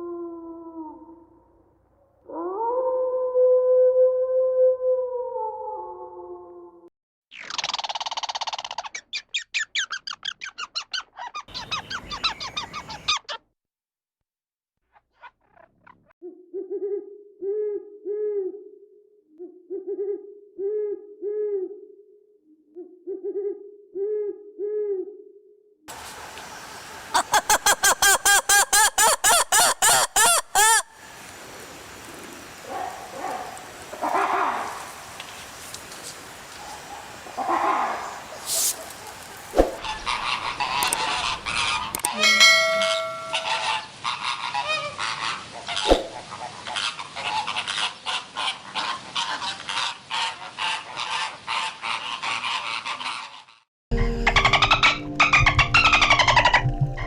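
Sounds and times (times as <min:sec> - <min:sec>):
owl hooting: 0:26.5 - 0:30.9, 0:32.6 - 0:43.9
animal calls: 0:27.1 - 0:30.9, 0:32.5 - 0:53.6, 0:54.3 - 0:57.0.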